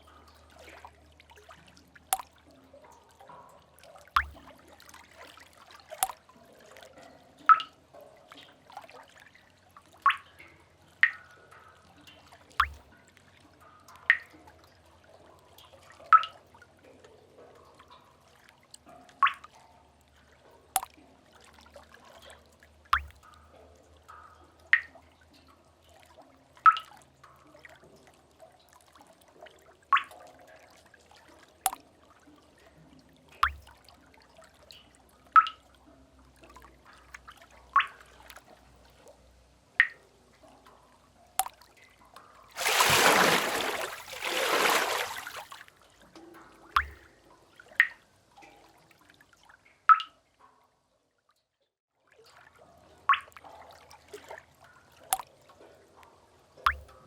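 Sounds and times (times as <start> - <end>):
water drops dripping into water: 0.0 - 39.0, 39.8 - 49.0, 49.8 - 50.5, 53.0 - 57.0.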